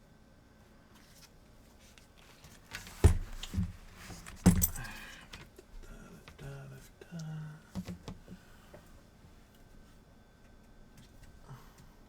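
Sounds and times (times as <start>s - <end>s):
tools clattering on a workbench: 2.7s - 5.5s.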